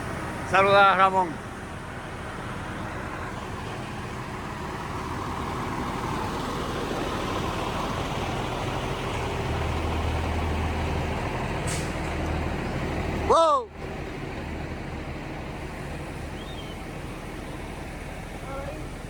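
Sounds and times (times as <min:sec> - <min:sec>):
diesel trucks running: 0:00.0 - 0:19.0
air brake hiss: 0:11.7 - 0:12.1.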